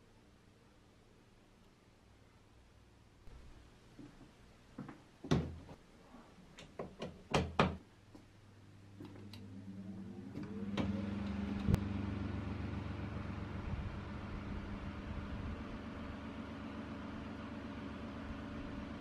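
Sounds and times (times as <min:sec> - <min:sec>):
electric fan motor hum: 0:08.8 - 0:19.0.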